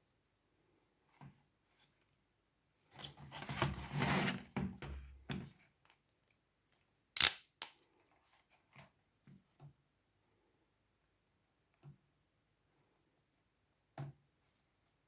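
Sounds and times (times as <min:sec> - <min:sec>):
rustling and scraping of helmet strap: 0:01.1 - 0:02.2, 0:02.8 - 0:06.0, 0:07.8 - 0:09.5
sharp plastic click: 0:07.2 - 0:07.8.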